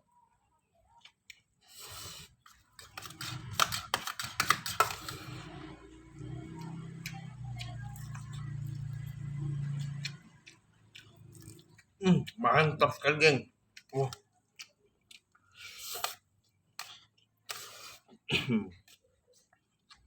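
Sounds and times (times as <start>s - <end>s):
wet chewing clicks and smacks: 6.4s - 12.4s, 13.7s - 15.4s.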